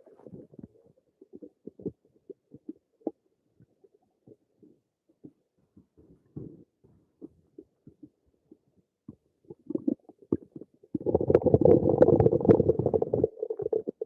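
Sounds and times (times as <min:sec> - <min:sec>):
stomach gurgling: 0:00.0 - 0:14.0.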